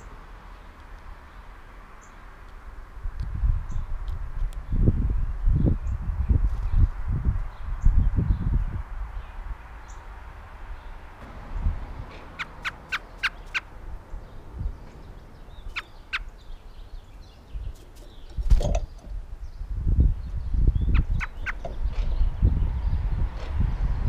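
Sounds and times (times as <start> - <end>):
low thumping rumble: 11.2 - 12.9
bird calling sharp notes: 12.1 - 13.8, 15.6 - 16.5, 20.8 - 21.8.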